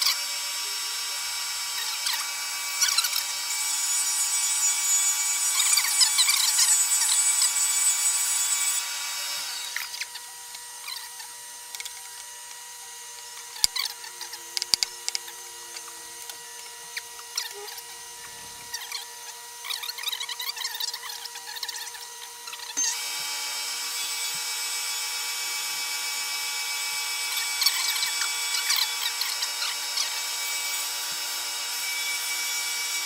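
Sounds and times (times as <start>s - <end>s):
milling machine cutting wood: 0.0s - 33.0s
sharp clicks: 14.6s - 15.3s.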